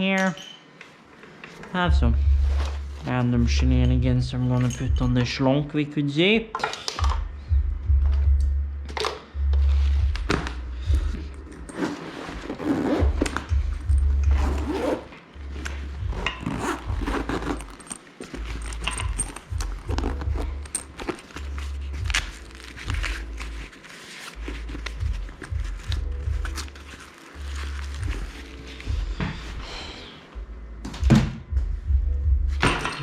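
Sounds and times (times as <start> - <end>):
cables and gear rummaged: 8.2 - 29.6.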